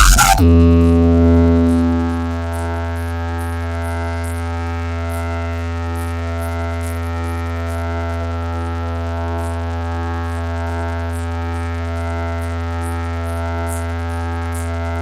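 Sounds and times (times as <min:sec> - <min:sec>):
deep bass test tone: 0:00.0 - 0:06.8
droning higher tones: 0:00.0 - 0:15.0.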